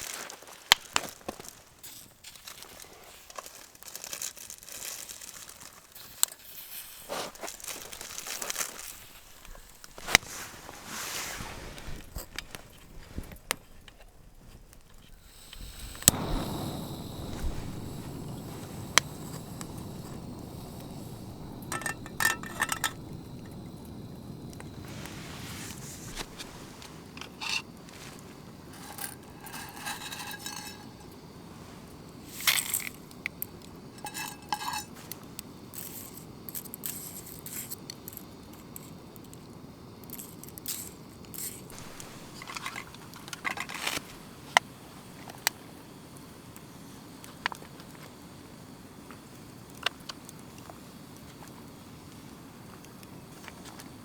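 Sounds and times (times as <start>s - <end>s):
low background rumble: 15.2s - 31.4s
utensils clinking and scraping: 21.6s - 23.8s, 24.5s - 31.3s, 33.9s - 35.2s.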